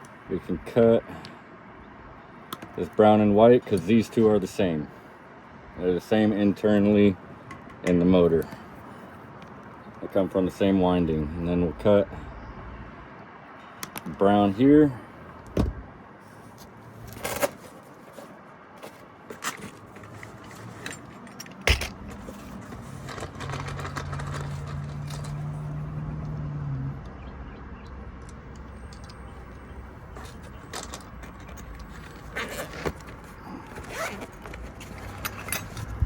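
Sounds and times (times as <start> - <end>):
hand tools clicking and clinking: 18.8 - 25.7, 28.3 - 29.6, 30.2 - 36.0.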